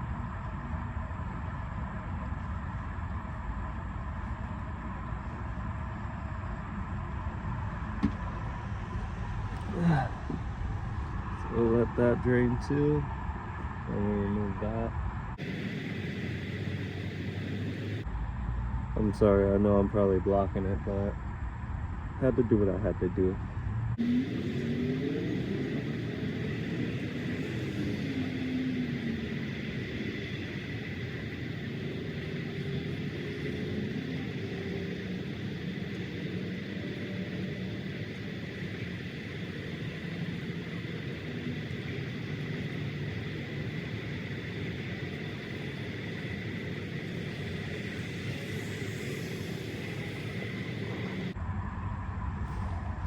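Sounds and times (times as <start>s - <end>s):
distant vehicle rumble: 0.0s - 53.0s.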